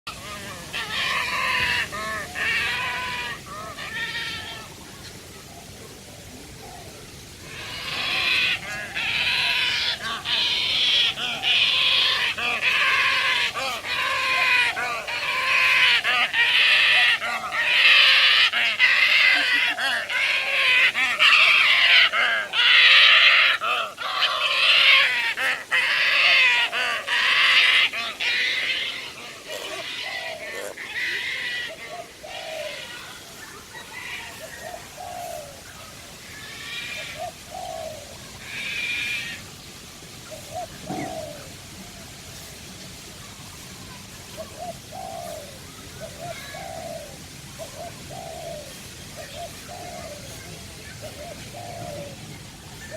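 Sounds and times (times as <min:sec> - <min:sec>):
birds squawking and calling: 0:00.1 - 0:52.9
pigeon cooing: 0:05.6 - 0:33.2, 0:40.3 - 0:41.7, 0:44.4 - 0:52.9
high-pitched bird calls: 0:40.4 - 0:41.5.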